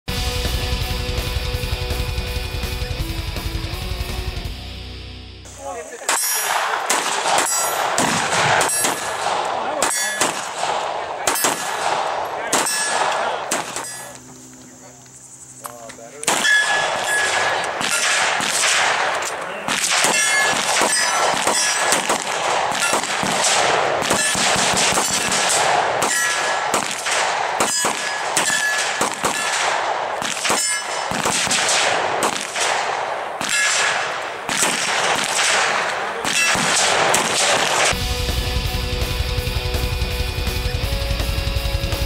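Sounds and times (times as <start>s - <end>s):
music: 0.1s - 5.5s, 37.9s - 42.0s
steel targets clanging: 5.8s - 10.6s, 12.4s - 14.2s, 15.7s - 18.4s, 19.2s - 22.1s, 24.1s - 26.7s, 27.6s - 29.6s, 30.4s - 31.2s, 33.4s - 34.2s, 35.8s - 38.0s
pistol shots: 6.0s - 14.2s, 16.2s - 38.0s.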